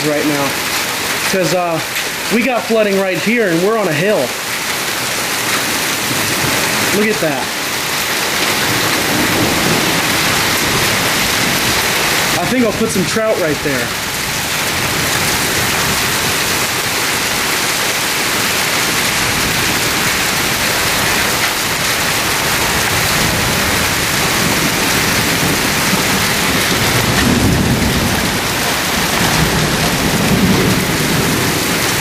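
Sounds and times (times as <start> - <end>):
torrential rain pouring: 0.0 - 32.0
low rumble of thunder: 8.4 - 17.0, 18.9 - 32.0.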